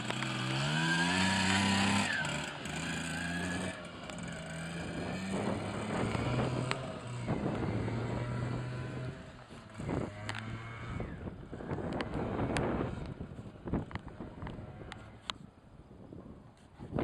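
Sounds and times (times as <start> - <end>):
two-stroke engine revving: 0.0 - 15.4.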